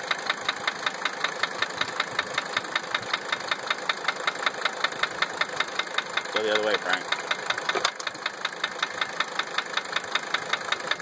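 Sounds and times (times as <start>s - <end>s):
diesel engine idling: 0.0s - 11.0s
sharp regular engine tap: 5.6s - 8.3s.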